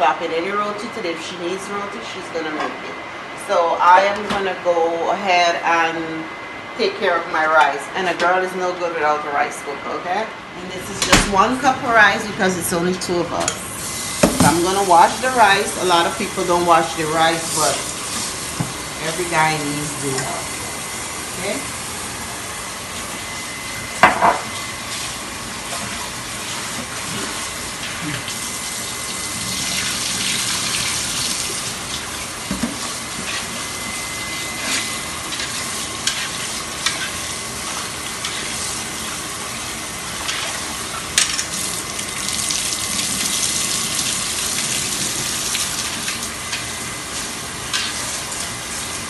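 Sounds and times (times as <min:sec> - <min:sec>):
tap water running: 0:13.4 - 0:20.4, 0:22.9 - 0:49.0.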